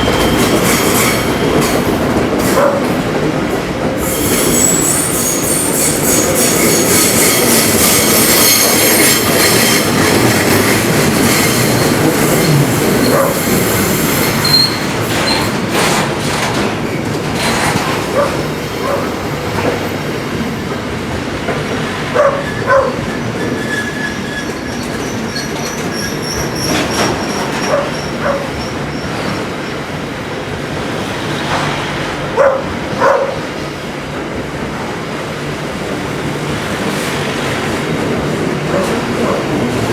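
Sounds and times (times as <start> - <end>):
train wheel squeal: 0.0 - 2.8, 4.0 - 16.0, 22.1 - 29.9
train wheels rumbling on rails: 0.0 - 39.9.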